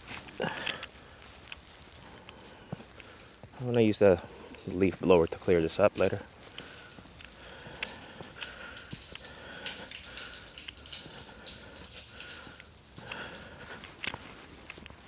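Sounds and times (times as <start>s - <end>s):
footsteps crunching on icy snow: 0.0s - 9.2s, 12.6s - 15.0s
small crackles and ticks: 0.0s - 15.0s.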